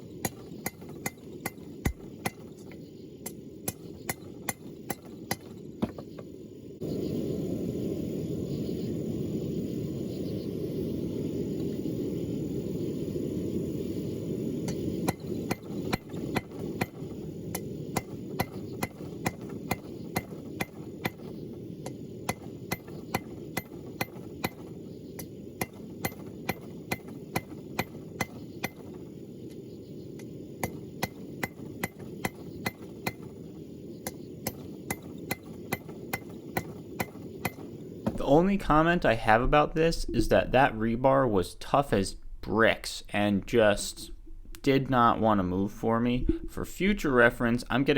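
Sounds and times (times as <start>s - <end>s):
low rumble: 36.8s - 47.9s.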